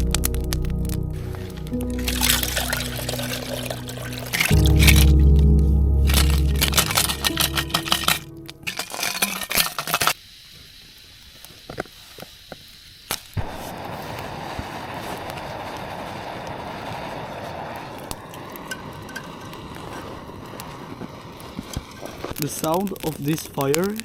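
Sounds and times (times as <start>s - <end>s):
campfire crackling and popping: 0.0s - 10.2s, 11.4s - 24.0s
steady rushing noise of fire: 10.2s - 24.0s.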